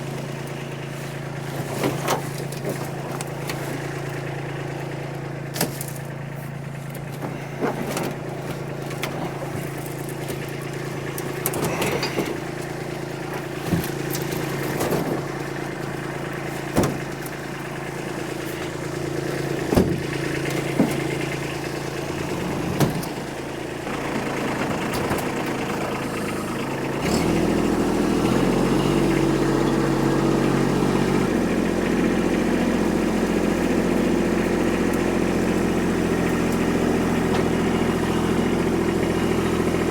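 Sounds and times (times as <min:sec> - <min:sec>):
tractor diesel engine running: 0:00.0 - 0:39.9
short knocks and clanks: 0:11.2 - 0:12.7.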